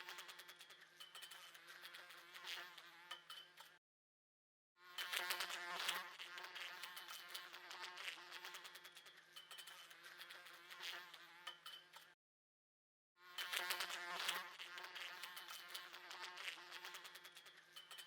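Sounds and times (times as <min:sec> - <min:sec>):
fly ticking against window glass: 0:00.0 - 0:03.8, 0:04.8 - 0:12.2, 0:13.2 - 0:18.0
fly buzzing: 0:01.6 - 0:03.8, 0:04.8 - 0:09.0, 0:09.8 - 0:12.2, 0:13.2 - 0:17.5.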